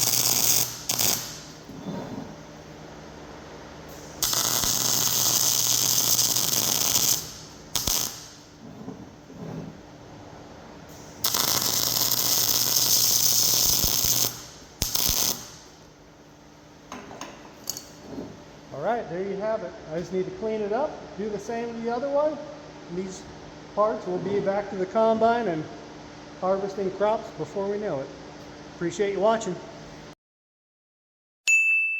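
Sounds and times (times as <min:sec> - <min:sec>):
welding arc crackling: 0:00.0 - 0:01.8, 0:03.9 - 0:08.6, 0:10.9 - 0:16.0
short welder blip: 0:04.2 - 0:08.4, 0:11.2 - 0:15.6.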